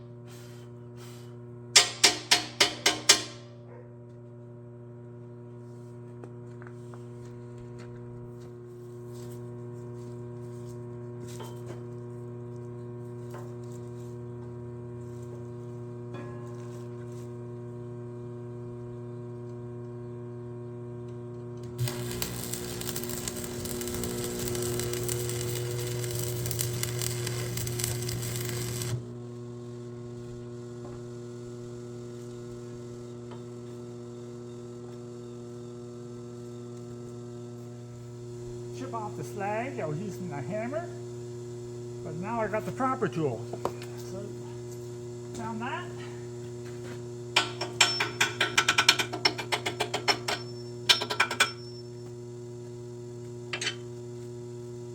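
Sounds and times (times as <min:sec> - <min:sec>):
arc welder electrical hum: 0:00.0 - 0:54.9
welding arc crackling: 0:21.6 - 0:29.2.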